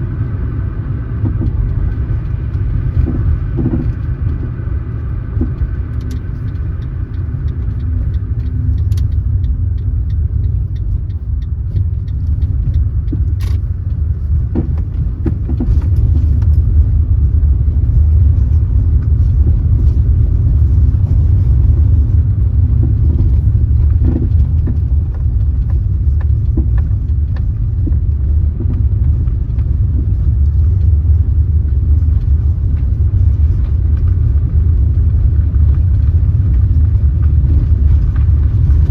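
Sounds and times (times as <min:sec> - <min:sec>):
car road and engine rumble: 0:00.0 - 0:38.9
small clicks and knocks: 0:01.2 - 0:04.5, 0:05.3 - 0:16.8.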